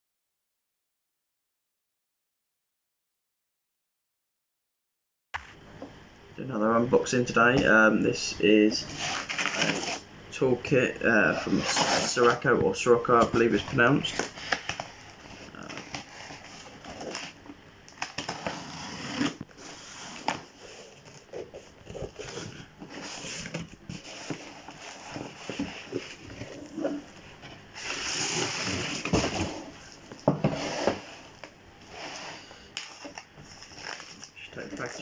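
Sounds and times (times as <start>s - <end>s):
packaging rustling and rubbing: 8.8s - 10.1s, 13.3s - 17.4s, 18.0s - 35.0s.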